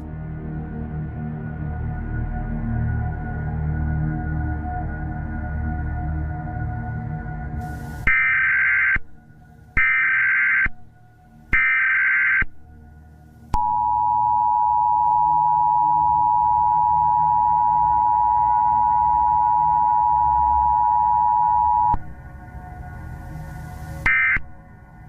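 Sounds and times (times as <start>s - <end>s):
loud dual-tone beep: 13.6s - 22.0s, 24.1s - 24.4s.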